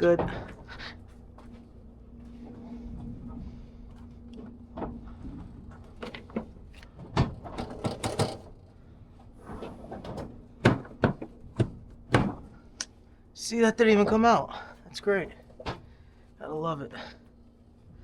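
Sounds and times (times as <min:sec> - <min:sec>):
faint steady hum: 0:00.0 - 0:18.0
tie-down gear knocks and clunks: 0:05.7 - 0:08.6.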